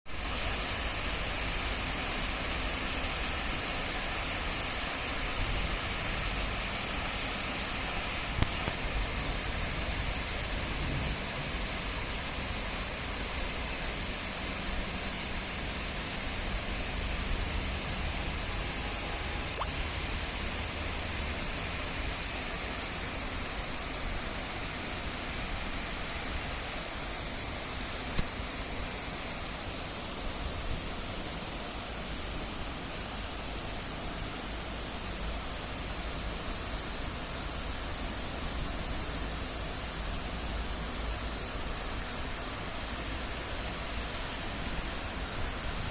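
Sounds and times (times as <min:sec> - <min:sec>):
steady rain falling: 0:00.1 - 0:45.9
sharp isolated clicks: 0:19.5 - 0:19.8.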